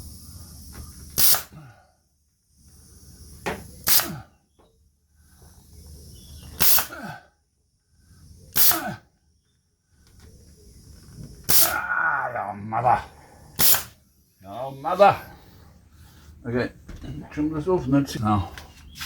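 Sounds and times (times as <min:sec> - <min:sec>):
staple gun firing: 0:01.2 - 0:01.5, 0:06.6 - 0:06.9, 0:13.6 - 0:13.9.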